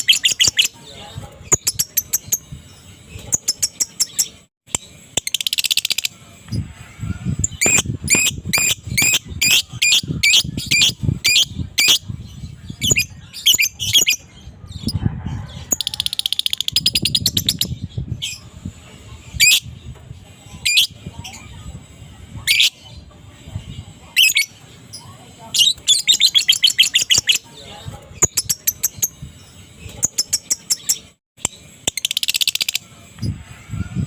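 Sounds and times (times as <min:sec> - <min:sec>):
lovebird chirping shrilly: 0:07.4 - 0:12.0.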